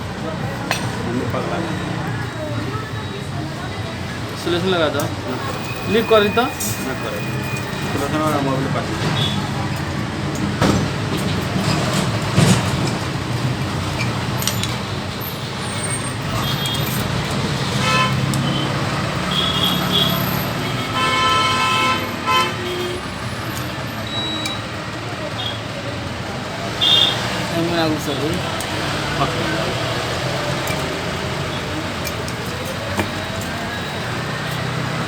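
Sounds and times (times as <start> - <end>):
road traffic: 0.0 - 35.0
vehicle horn: 17.7 - 23.2.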